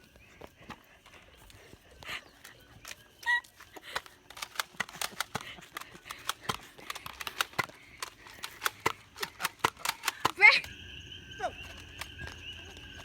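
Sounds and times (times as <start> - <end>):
sharp clicks and clacks: 3.8 - 10.4.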